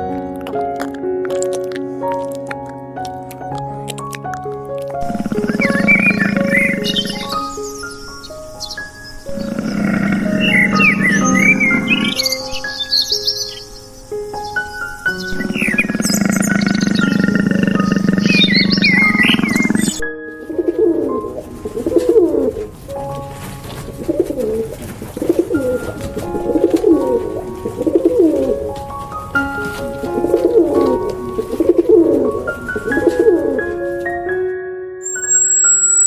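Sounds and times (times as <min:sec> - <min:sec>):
background music: 0:00.0 - 0:36.0
high bird chirps: 0:10.4 - 0:22.6, 0:35.0 - 0:36.0
low animal calls: 0:15.2 - 0:34.5.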